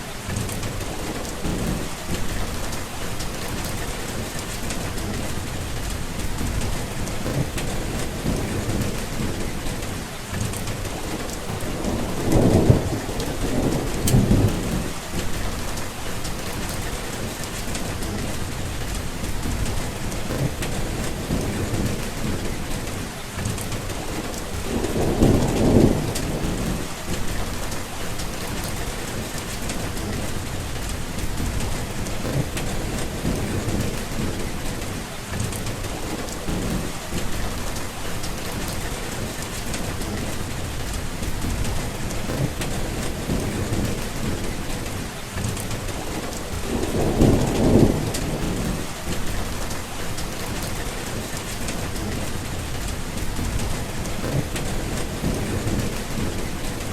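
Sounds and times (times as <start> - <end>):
heavy rain falling: 0.0 - 56.9
thunder rumbling: 0.0 - 56.9.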